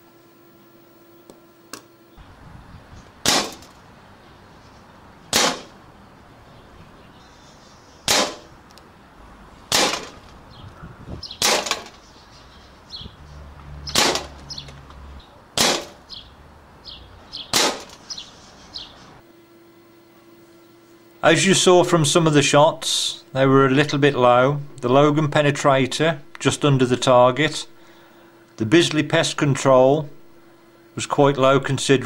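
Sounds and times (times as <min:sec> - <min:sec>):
air rifle shots: 0:03.2 - 0:03.8, 0:05.3 - 0:05.8, 0:08.0 - 0:08.5, 0:09.7 - 0:10.2, 0:11.4 - 0:12.0, 0:13.9 - 0:14.3, 0:15.6 - 0:16.0, 0:17.5 - 0:18.0.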